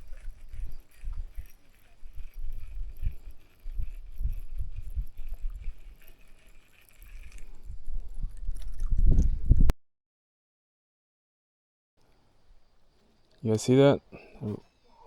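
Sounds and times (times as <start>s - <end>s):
wind buffeting microphone: 0.0s - 9.7s.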